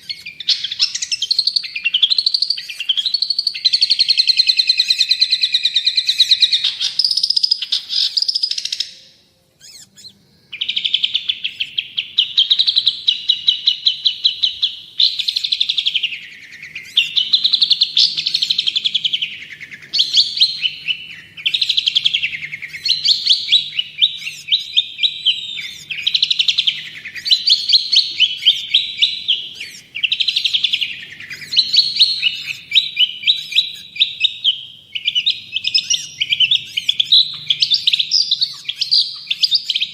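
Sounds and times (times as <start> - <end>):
shrike rattling trills: 0.0 - 39.9.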